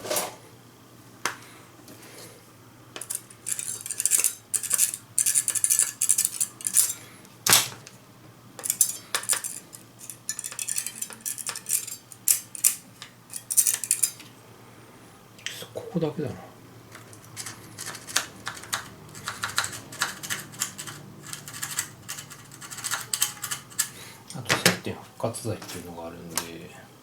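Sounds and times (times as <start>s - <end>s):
file scraping metal contacts: 16.9s - 24.4s.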